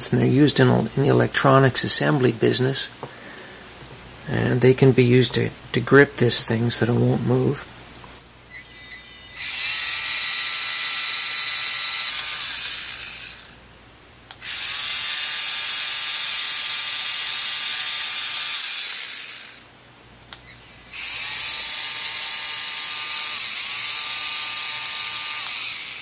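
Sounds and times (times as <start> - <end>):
pen motor whirring: 8.6 - 13.6, 14.4 - 19.7, 20.5 - 26.0.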